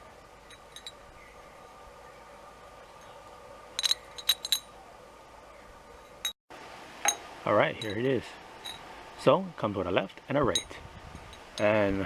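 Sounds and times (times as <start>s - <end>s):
metal parts clinking: 0.5s - 1.0s, 3.8s - 4.7s.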